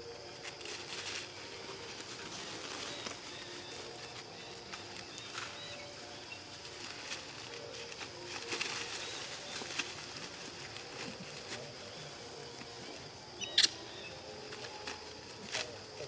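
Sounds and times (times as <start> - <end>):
rustling: 0.3 - 16.0
faint high-pitched chirps: 13.3 - 14.9.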